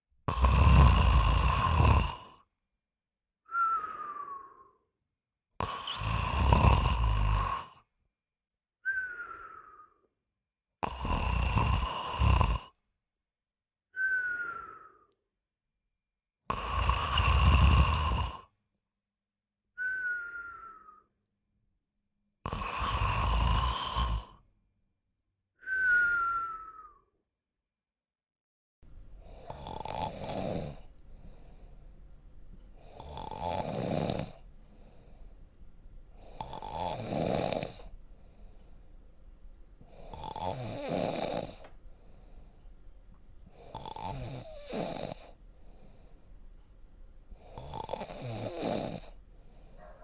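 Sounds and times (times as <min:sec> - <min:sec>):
person snoring: 0:00.3 - 0:02.4, 0:05.6 - 0:07.8, 0:10.8 - 0:12.8, 0:16.5 - 0:18.5, 0:22.5 - 0:24.4, 0:29.2 - 0:32.0, 0:32.7 - 0:35.4, 0:36.1 - 0:38.8, 0:39.8 - 0:42.6, 0:43.5 - 0:46.2, 0:47.4 - 0:50.0
whistling breath: 0:03.4 - 0:05.0, 0:08.8 - 0:10.2, 0:13.9 - 0:15.3, 0:19.8 - 0:21.2, 0:25.6 - 0:27.2.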